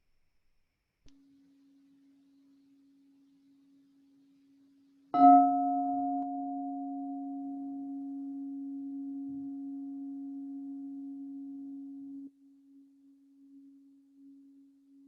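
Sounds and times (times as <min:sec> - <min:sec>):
singing bowl ringing: 0:05.2 - 0:12.3.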